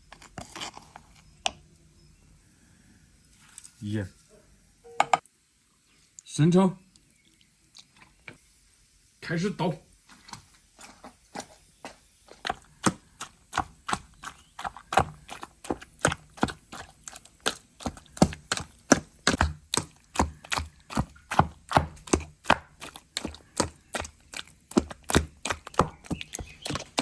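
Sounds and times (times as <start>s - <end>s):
pestle pounding in mortar: 12.4s - 27.0s.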